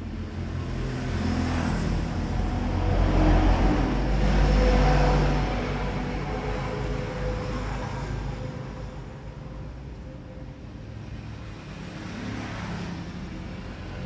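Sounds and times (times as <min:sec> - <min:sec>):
engine revving: 0:00.0 - 0:10.1.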